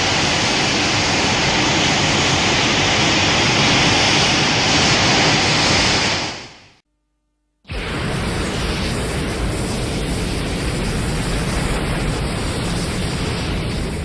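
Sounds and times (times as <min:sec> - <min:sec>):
steady rushing hiss: 0:07.7 - 0:14.0.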